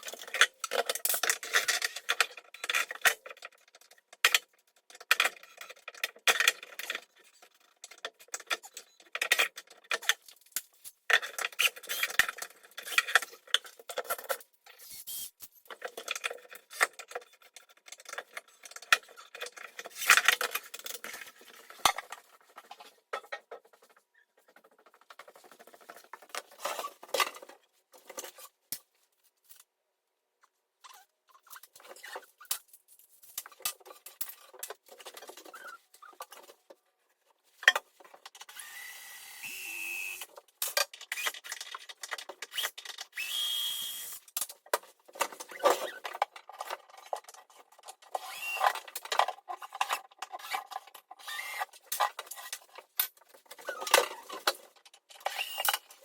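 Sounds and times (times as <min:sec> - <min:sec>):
power tool running: 0:38.5 - 0:40.2.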